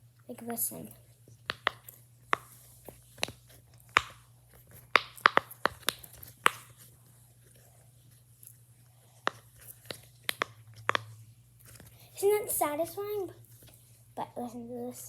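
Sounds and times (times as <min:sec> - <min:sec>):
fidget toy clicking and crunching: 0:00.7 - 0:06.9, 0:08.4 - 0:13.8.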